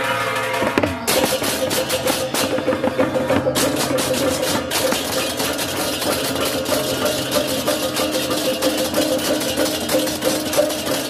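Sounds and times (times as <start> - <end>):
cymbals clashing rapidly: 0.0 - 11.0
drums: 0.0 - 11.0.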